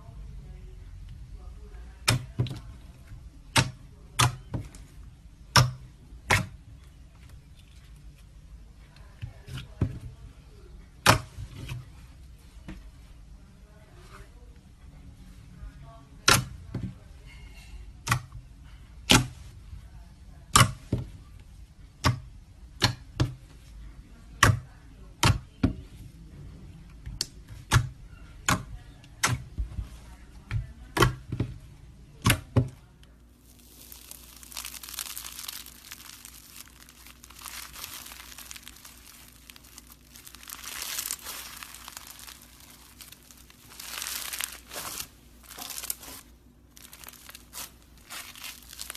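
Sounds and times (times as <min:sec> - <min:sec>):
slime crinkly crackling: 0:33.2 - 0:48.9.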